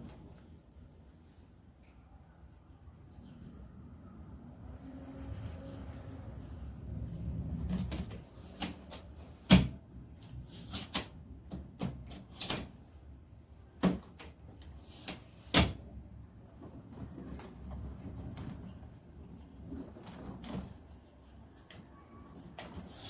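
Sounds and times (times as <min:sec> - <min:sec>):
suitcase rolling rumble: 0:16.0 - 0:20.9.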